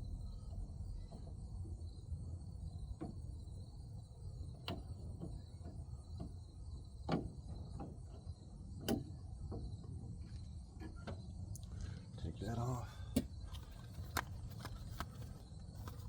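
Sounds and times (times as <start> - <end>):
steady low rumble: 0.0 - 4.6.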